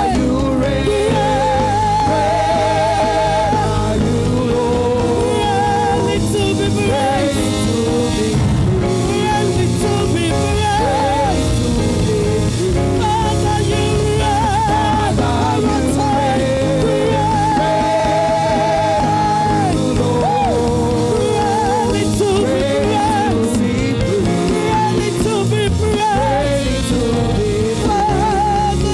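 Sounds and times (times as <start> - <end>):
band playing worship music: 0.0 - 28.9
person singing: 0.0 - 28.9.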